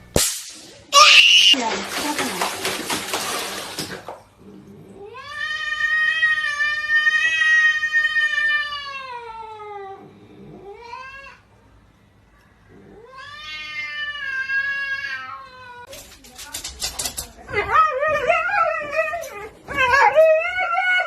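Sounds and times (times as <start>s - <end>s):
cat yowling: 1.0s - 1.6s.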